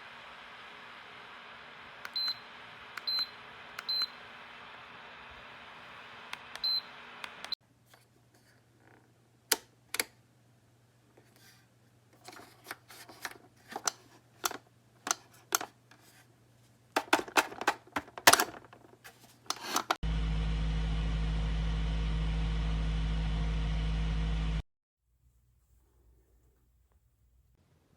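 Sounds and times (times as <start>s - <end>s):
clicks and knocks of handling heater: 12.2s - 15.8s, 17.0s - 20.0s.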